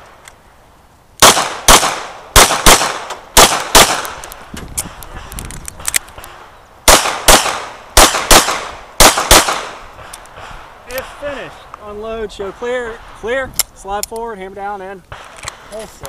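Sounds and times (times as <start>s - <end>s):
echo of gunshots: 1.2s - 4.2s, 6.2s - 11.2s
pistol shots in pairs: 1.2s - 4.2s, 6.8s - 10.1s.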